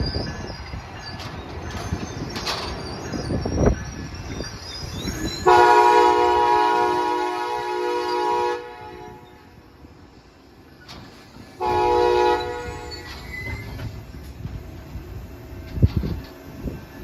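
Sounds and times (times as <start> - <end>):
low rumble of train: 0.0 - 17.0
locomotive horn blasts: 5.4 - 9.5, 11.6 - 13.0.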